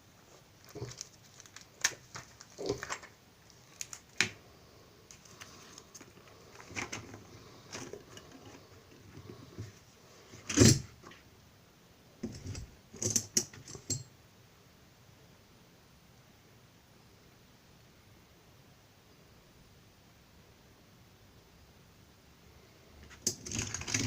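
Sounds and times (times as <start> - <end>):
small hard objects clicking and rattling: 0.6 - 4.3, 23.1 - 24.0.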